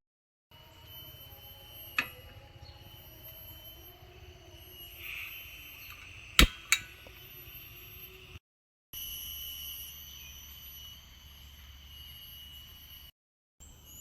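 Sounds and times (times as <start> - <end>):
constant high whine: 0.6 - 8.4.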